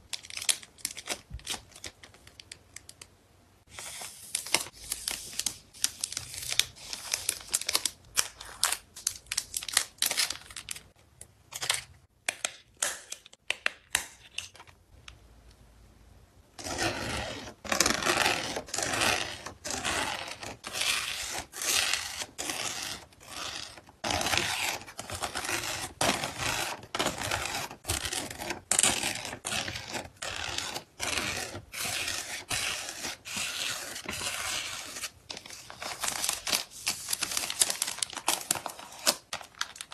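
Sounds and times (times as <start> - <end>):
packaging crinkling and rustling: 33.3 - 39.9.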